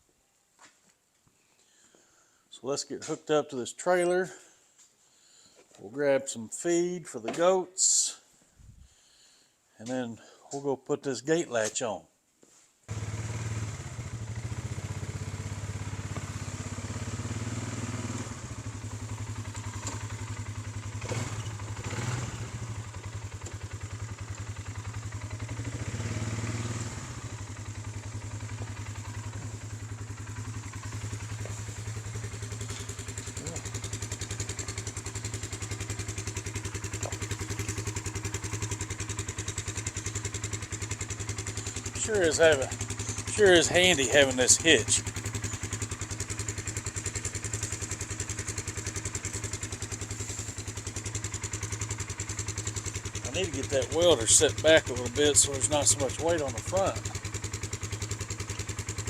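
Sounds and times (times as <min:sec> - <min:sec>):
atv engine running: 0:12.9 - 0:59.0.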